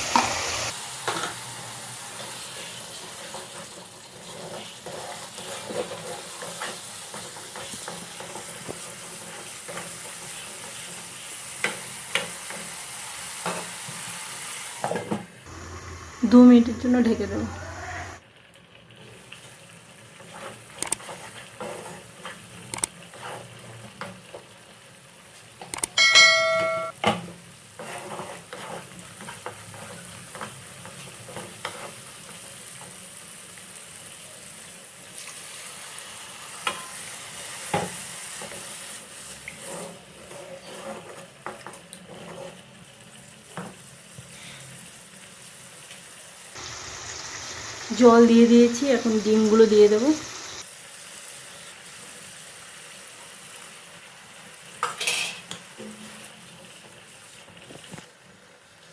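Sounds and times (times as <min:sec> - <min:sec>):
curry sizzling in a pan: 0:00.0 - 0:58.9
metal pot ringing: 0:26.0 - 0:27.0.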